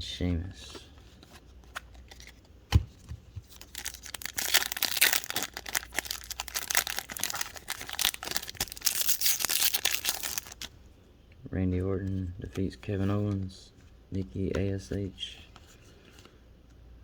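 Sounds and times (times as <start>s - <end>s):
foil wrapper crinkling and tearing: 3.5s - 10.7s.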